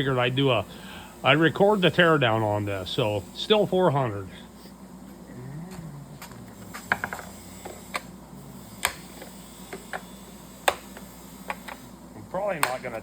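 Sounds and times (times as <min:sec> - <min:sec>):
steady low hum: 0:00.0 - 0:13.0
clicks and taps of tools: 0:12.6 - 0:13.0.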